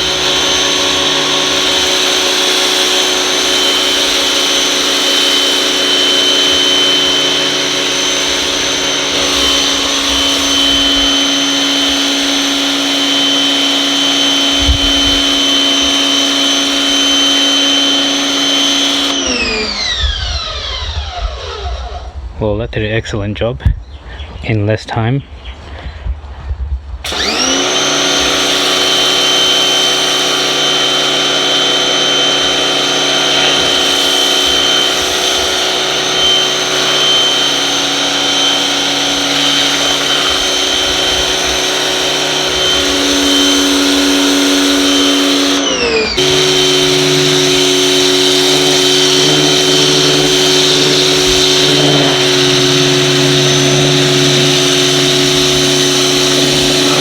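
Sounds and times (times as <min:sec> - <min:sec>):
pressure washer motor whine: 0:00.0 - 0:22.2, 0:27.0 - 0:57.0
water spray hiss: 0:33.3 - 0:45.6.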